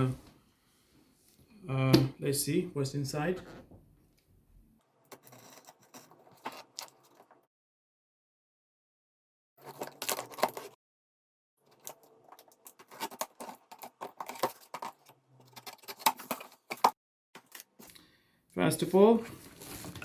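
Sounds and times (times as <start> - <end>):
packaging clicks knocks and rustles: 9.6 - 10.8, 11.7 - 17.9.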